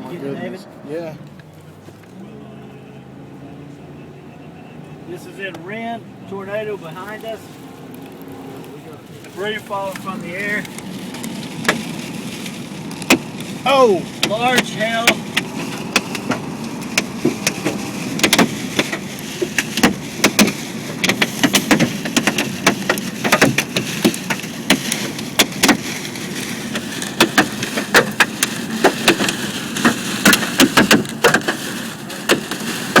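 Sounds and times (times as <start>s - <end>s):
steady rushing noise: 5.1s - 33.0s
hail hitting a car: 9.1s - 33.0s.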